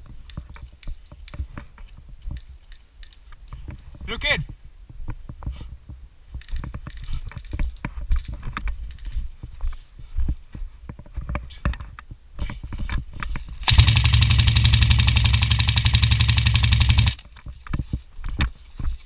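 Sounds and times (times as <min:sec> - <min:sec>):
airsoft gun full-auto burst: 0:13.6 - 0:17.2.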